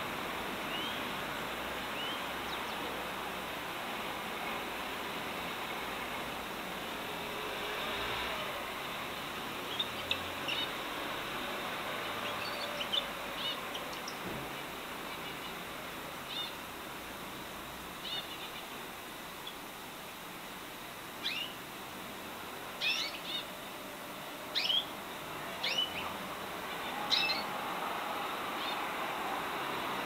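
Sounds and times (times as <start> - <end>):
steady background hiss: 0.0 - 30.0
birds chirping downward calls: 21.2 - 21.6, 22.8 - 23.6, 24.5 - 25.0, 25.6 - 27.5.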